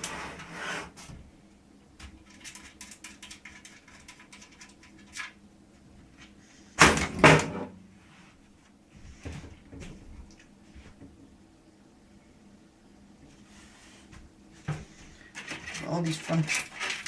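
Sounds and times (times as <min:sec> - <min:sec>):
loud clunks of computer case panel: 0:06.8 - 0:07.7.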